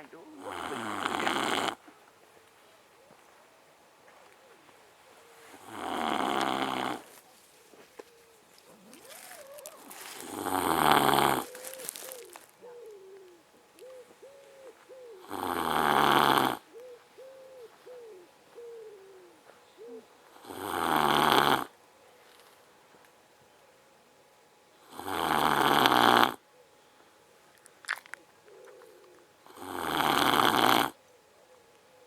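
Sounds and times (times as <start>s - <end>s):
dog snoring: 0.4s - 1.8s, 5.6s - 7.0s, 10.2s - 11.5s, 15.2s - 16.6s, 20.4s - 21.7s, 24.9s - 26.4s, 29.5s - 31.0s.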